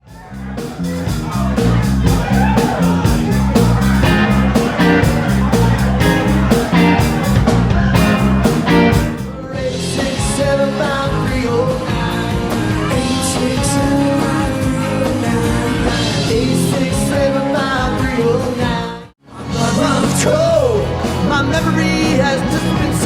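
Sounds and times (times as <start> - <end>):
rock music: 0.0 - 23.0
person singing: 4.0 - 7.4, 8.0 - 20.8.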